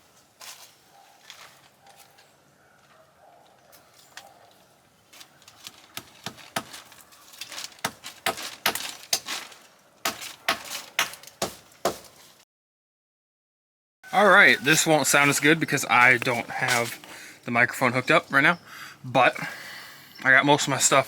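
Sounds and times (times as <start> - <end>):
camping gear knocking and clattering: 5.1 - 12.2.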